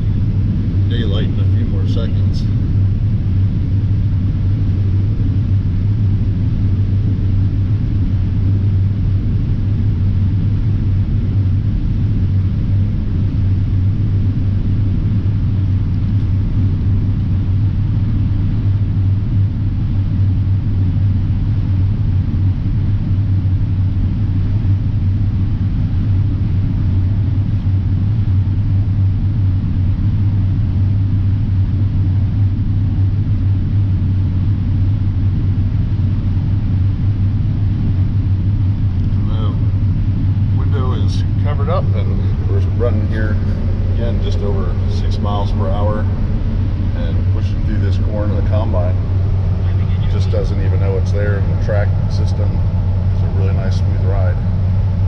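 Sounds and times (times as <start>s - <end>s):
combine harvester engine drone: 0.0s - 55.0s.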